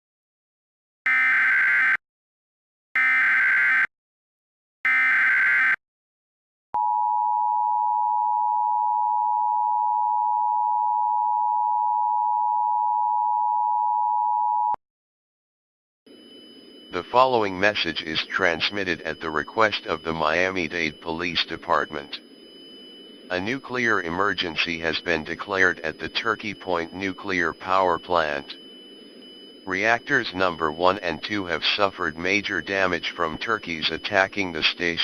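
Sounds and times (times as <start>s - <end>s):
data tone bursts: 1.1s - 2.0s, 3.0s - 3.9s, 4.9s - 5.8s, 16.1s - 35.0s
two-tone attention signal: 1.1s - 2.0s, 3.0s - 3.9s, 4.9s - 5.8s, 16.1s - 35.0s.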